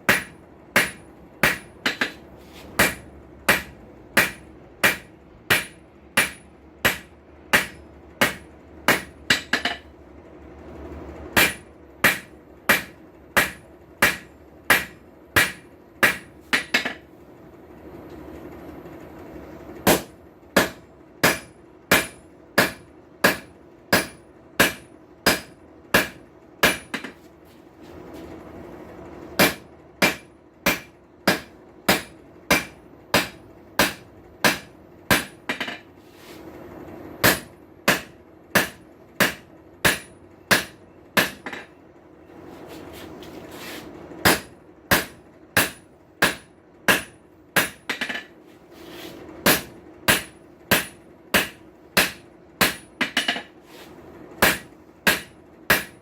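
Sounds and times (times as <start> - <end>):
hammer striking steel on anvil: 0.0 - 9.9, 11.4 - 17.1, 19.9 - 27.2, 29.4 - 35.9, 37.2 - 41.8, 44.2 - 48.3, 49.4 - 53.6, 54.4 - 56.0.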